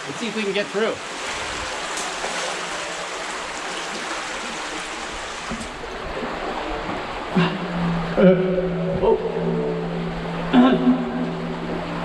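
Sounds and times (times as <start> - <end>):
stream water rushing: 0.0 - 12.0.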